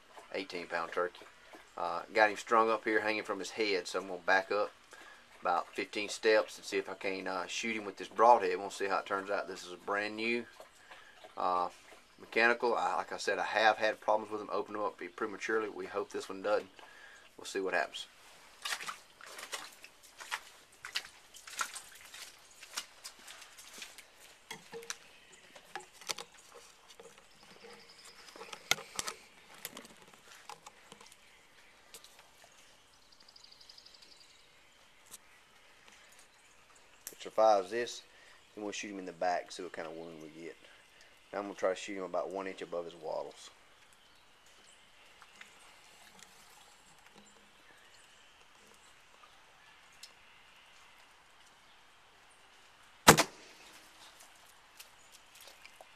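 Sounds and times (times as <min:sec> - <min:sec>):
faint outdoor hiss: 0:00.0 - 0:55.9
bow handling clicks and knocks: 0:24.5 - 0:31.2.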